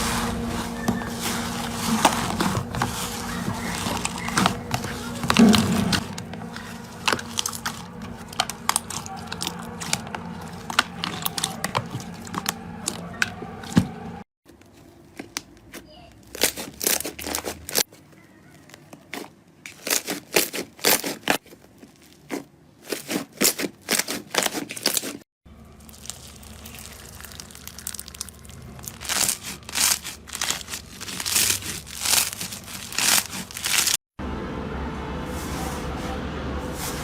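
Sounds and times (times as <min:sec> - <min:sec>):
slime squished by hand: 0:06.6 - 0:13.8, 0:25.8 - 0:34.0.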